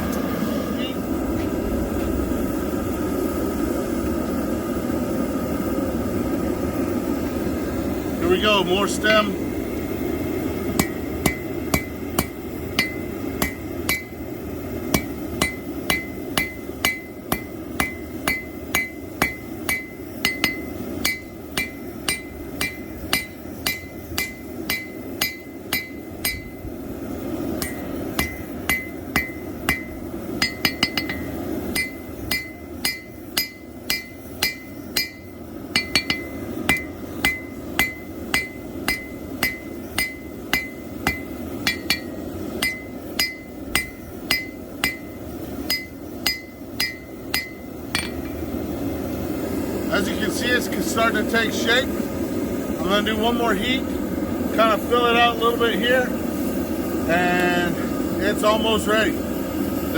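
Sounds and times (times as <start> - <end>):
hammer striking steel on anvil: 10.7 - 14.2, 14.9 - 26.7, 27.6 - 48.4.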